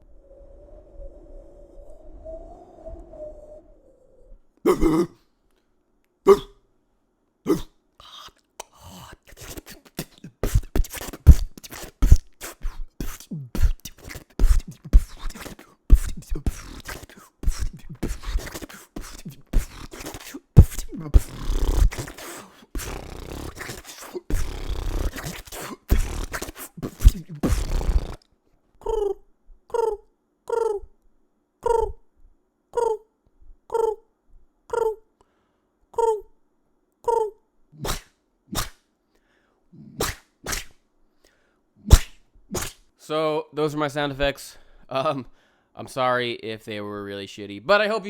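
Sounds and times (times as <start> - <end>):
beatboxing: 4.7 - 5.1, 6.3 - 6.5, 7.5 - 28.2, 28.8 - 30.8, 31.6 - 32.0, 34.7 - 35.0, 37.1 - 38.8, 39.8 - 40.7, 41.9 - 42.8.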